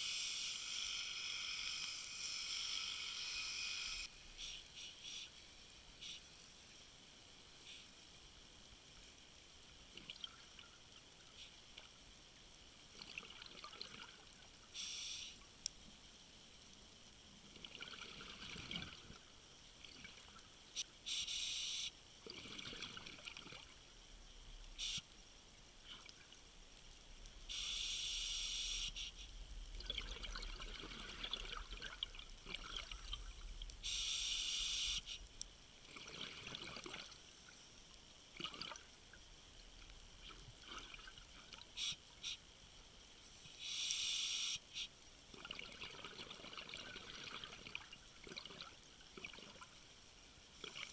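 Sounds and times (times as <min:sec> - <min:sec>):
hissing water spray: 0:00.0 - 0:06.4, 0:14.7 - 0:15.4, 0:20.8 - 0:21.9, 0:24.6 - 0:25.1, 0:27.3 - 0:29.4, 0:33.8 - 0:35.3, 0:41.7 - 0:42.4, 0:43.4 - 0:45.0
water splashing and trickling: 0:09.8 - 0:14.7, 0:17.4 - 0:20.7, 0:22.2 - 0:24.6, 0:29.6 - 0:33.9, 0:35.3 - 0:42.3, 0:45.3 - 0:50.9.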